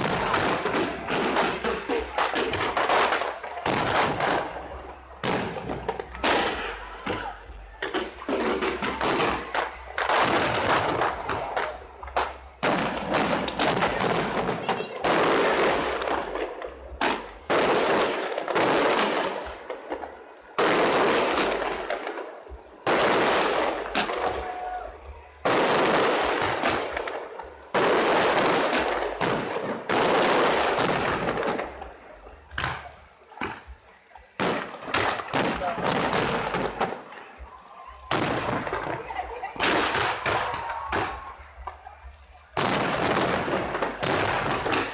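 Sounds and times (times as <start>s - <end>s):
fireworks banging: 0.0s - 44.9s
fireworks crackling: 0.0s - 44.9s
sharp firework pops: 5.2s - 20.0s, 34.4s - 37.0s, 42.6s - 44.9s.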